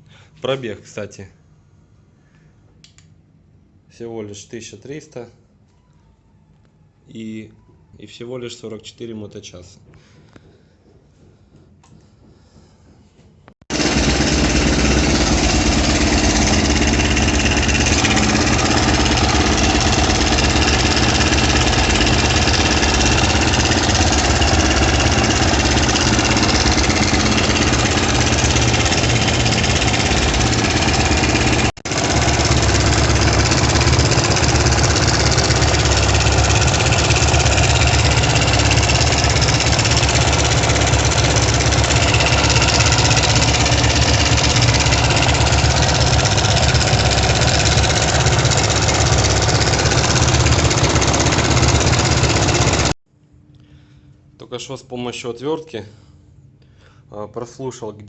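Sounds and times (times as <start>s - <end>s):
motorcycle engine idling: 13.7s - 52.9s
engine knocking: 13.7s - 53.0s.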